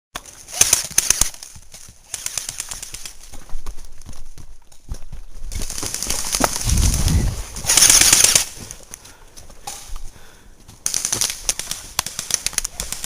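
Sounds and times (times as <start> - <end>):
footsteps crunching through dry leaves: 1.4 - 9.2.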